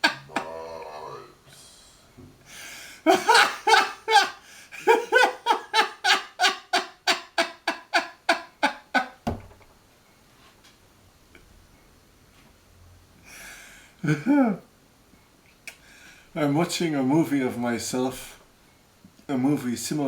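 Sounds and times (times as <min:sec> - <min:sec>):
man laughing hard: 0:00.0 - 0:00.8, 0:03.0 - 0:09.2
short low thump: 0:09.2 - 0:09.6.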